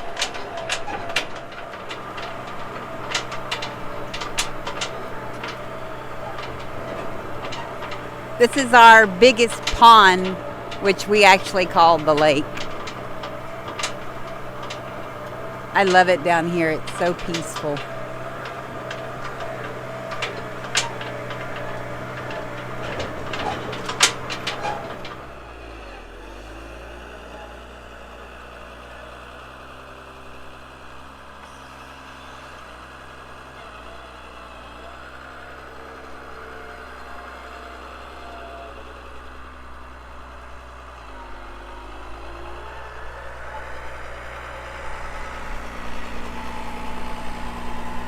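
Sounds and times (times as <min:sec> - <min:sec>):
vehicle body rattling and clanking: 0:00.0 - 0:31.6, 0:32.2 - 0:48.0
vehicle engine running: 0:00.0 - 0:48.0.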